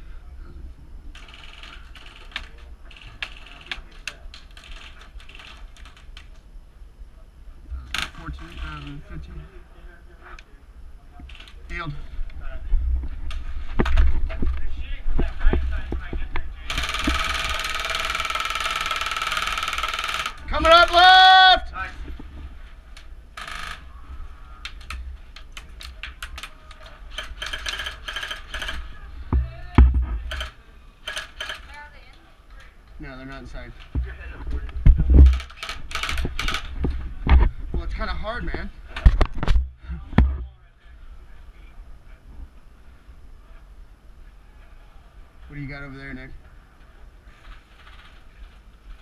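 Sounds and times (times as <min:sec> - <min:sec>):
airsoft guns firing: 0:16.7 - 0:21.1.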